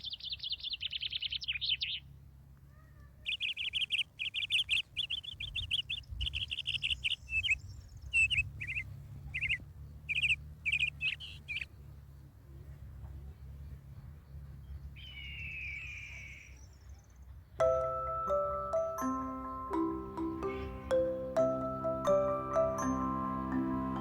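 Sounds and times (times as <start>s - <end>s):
songbird trilling chirps: 0.0s - 2.2s, 2.8s - 11.9s, 13.2s - 24.0s
low steady rumble: 17.6s - 24.0s.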